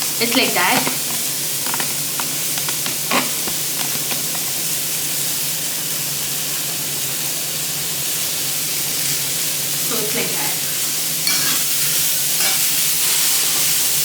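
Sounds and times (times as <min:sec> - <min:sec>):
vegetables sizzling in a pan: 0:00.0 - 0:14.0
pops and crackles: 0:00.8 - 0:04.7.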